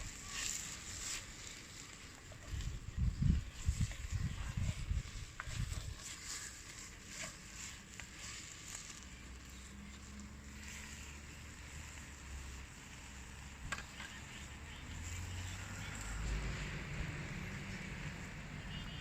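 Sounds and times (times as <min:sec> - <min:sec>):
wood fire crackling: 0:00.0 - 0:18.0
wind rumble on microphone: 0:02.4 - 0:06.3.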